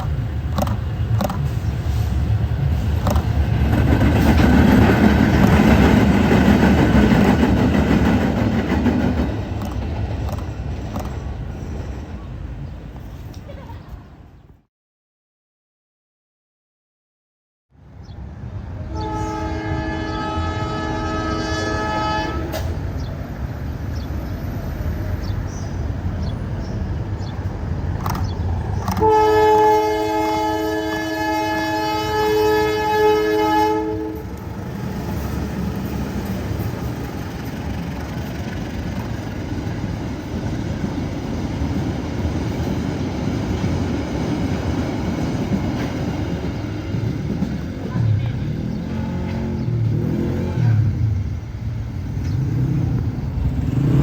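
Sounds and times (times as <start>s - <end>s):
locomotive horn blasts: 18.8s - 22.8s, 28.9s - 34.8s.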